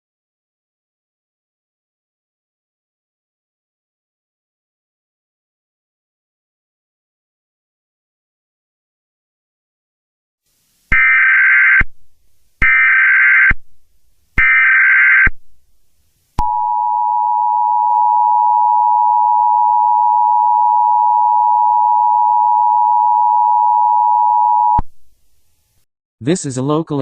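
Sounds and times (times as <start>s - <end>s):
data tone bursts: 10.9s - 11.9s, 12.6s - 13.6s, 16.4s - 24.8s.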